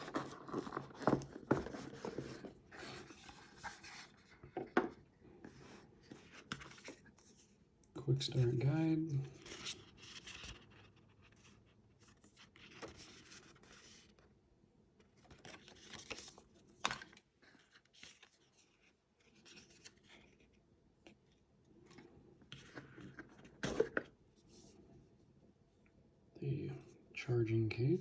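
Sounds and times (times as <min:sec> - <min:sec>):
paper packaging rustling: 0:00.0 - 0:04.4.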